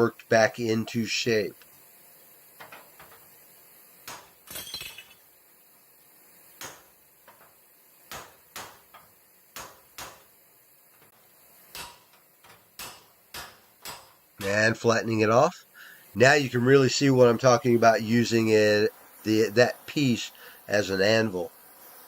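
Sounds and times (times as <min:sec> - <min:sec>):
hammer striking steel: 0:04.0 - 0:05.2, 0:06.6 - 0:10.4, 0:11.0 - 0:14.6.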